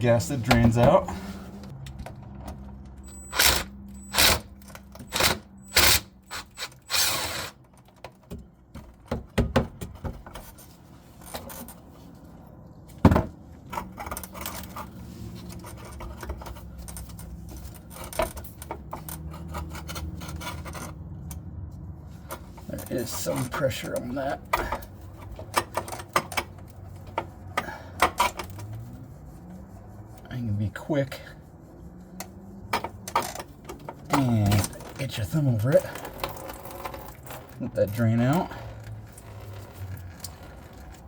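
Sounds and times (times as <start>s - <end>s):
hand tool clicking and scraping: 13.7s - 21.5s, 22.2s - 28.8s.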